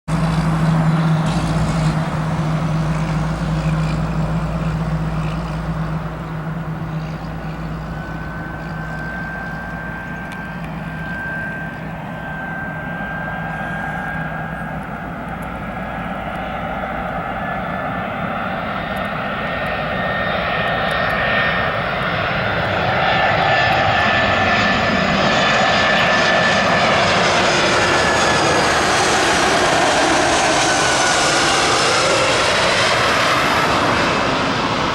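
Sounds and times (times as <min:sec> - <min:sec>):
steady low hum: 0:00.1 - 0:19.9
jet airliner engines whining: 0:00.1 - 0:34.9.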